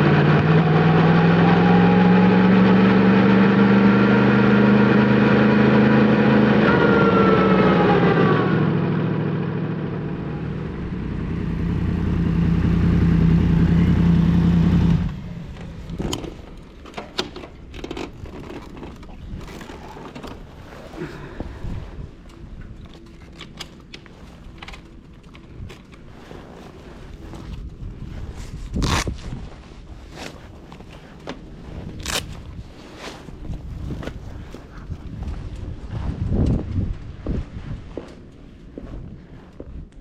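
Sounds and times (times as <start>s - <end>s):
motorcycle engine running: 0.0s - 16.7s.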